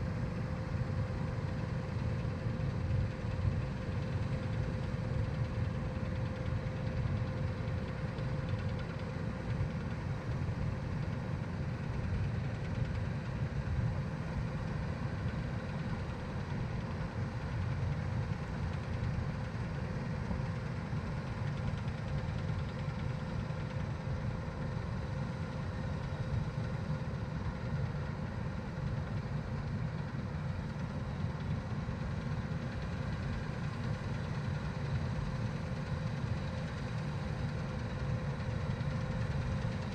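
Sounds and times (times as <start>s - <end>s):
faint steady whine: 0.0s - 39.9s.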